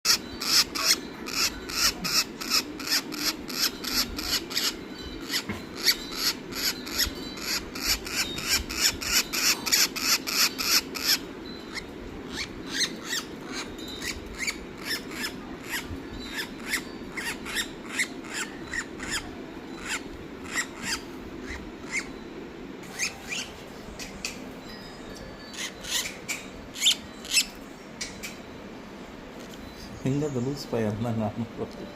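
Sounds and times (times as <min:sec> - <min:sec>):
parrot calling: 0:00.1 - 0:24.5, 0:25.5 - 0:28.3.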